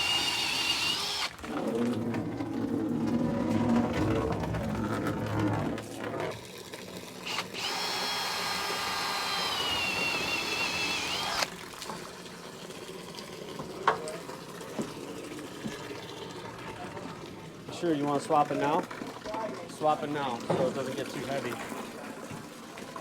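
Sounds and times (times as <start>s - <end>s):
power drill whining: 0.0s - 1.7s, 7.2s - 11.6s.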